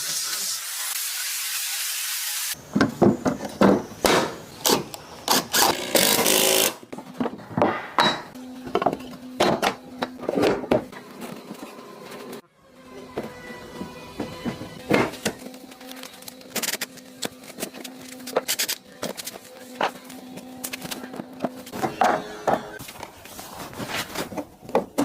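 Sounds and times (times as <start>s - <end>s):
hand tools knocking and scraping wood: 2.7s - 4.8s, 5.7s - 11.6s, 13.0s - 15.5s, 17.2s - 22.8s, 24.2s - 25.0s.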